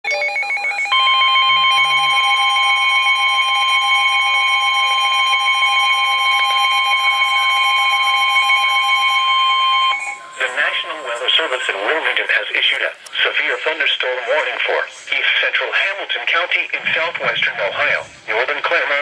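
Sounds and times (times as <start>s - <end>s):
steady electronic alert tone: 0.0s - 12.4s
warbling electronic tone: 0.1s - 13.0s.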